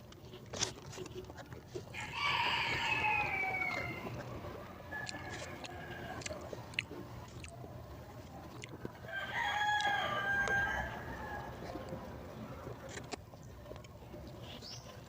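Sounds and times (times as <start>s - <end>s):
rooster crowing: 1.9s - 4.3s, 4.9s - 6.4s, 9.0s - 11.8s.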